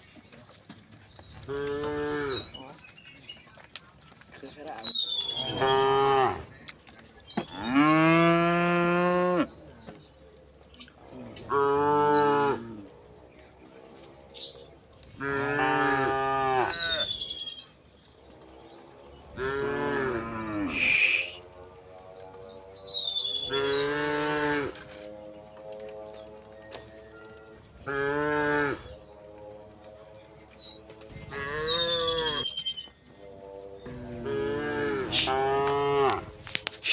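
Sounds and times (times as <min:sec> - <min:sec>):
small birds chirping: 0:00.0 - 0:36.9
cattle mooing: 0:01.4 - 0:02.5, 0:05.4 - 0:06.5, 0:07.5 - 0:09.6, 0:11.1 - 0:13.0, 0:15.1 - 0:17.3, 0:18.6 - 0:21.9, 0:23.4 - 0:25.0, 0:27.7 - 0:32.6, 0:33.2 - 0:36.9.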